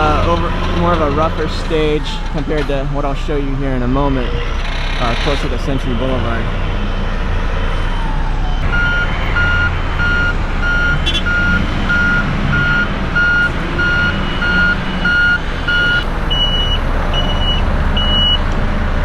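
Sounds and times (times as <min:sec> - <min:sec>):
engine rumble: 0:00.0 - 0:19.0
backup alarm beeping: 0:08.5 - 0:18.4.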